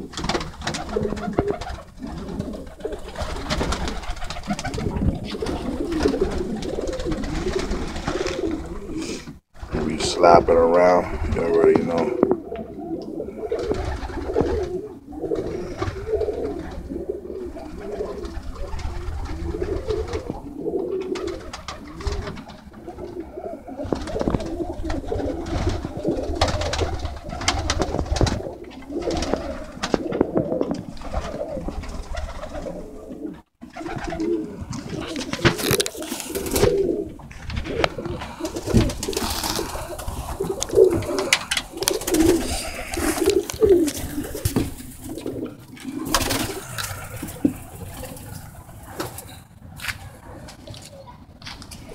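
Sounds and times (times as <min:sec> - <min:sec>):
pigeons cooing: 0:00.0 - 0:51.9
sharp clicks and rustles: 0:34.7 - 0:51.9.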